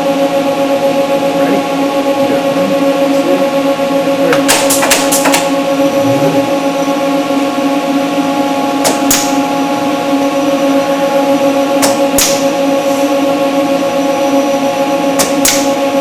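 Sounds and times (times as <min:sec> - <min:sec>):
machine hum: 0:00.0 - 0:16.0.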